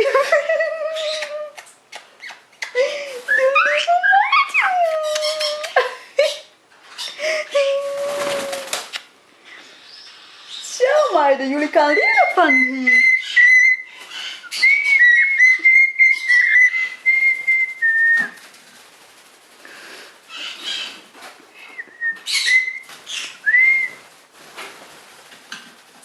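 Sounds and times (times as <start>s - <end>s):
parrot whistling a tune: 12.0s - 13.9s, 14.5s - 18.4s, 21.8s - 22.8s, 23.4s - 23.9s.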